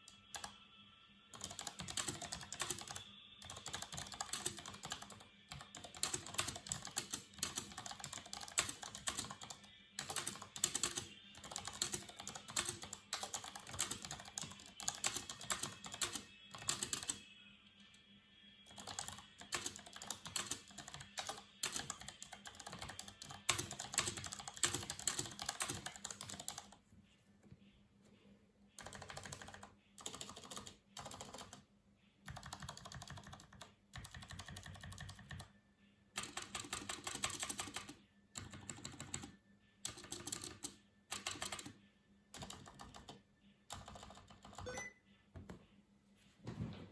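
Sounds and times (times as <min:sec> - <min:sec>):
typing on mechanical keyboard: 0:01.3 - 0:17.2, 0:18.7 - 0:26.8, 0:28.8 - 0:31.6, 0:32.3 - 0:35.5, 0:36.2 - 0:39.3, 0:39.9 - 0:41.8, 0:42.4 - 0:44.8.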